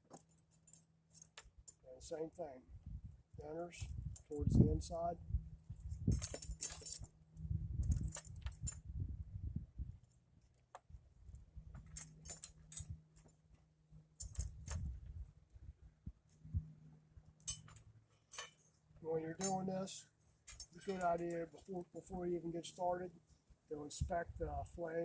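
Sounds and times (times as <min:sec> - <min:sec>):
metal spokes clinking and jingling: 0:06.1 - 0:07.1, 0:07.8 - 0:08.8, 0:11.8 - 0:13.4, 0:14.2 - 0:14.9, 0:17.4 - 0:18.6, 0:19.4 - 0:19.7.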